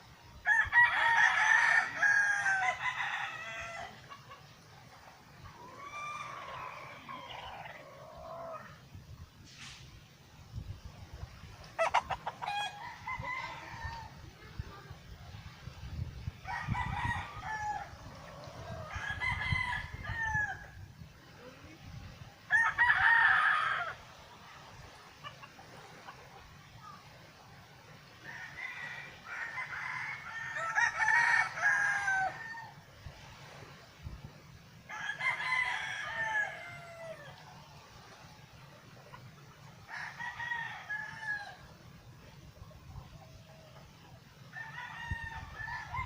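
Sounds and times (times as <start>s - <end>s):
roosters crowing: 0.4s - 4.4s, 5.4s - 8.8s, 11.7s - 14.3s, 16.4s - 20.8s, 22.5s - 24.1s, 28.2s - 32.9s, 34.8s - 37.5s, 39.8s - 41.8s, 44.5s - 46.0s.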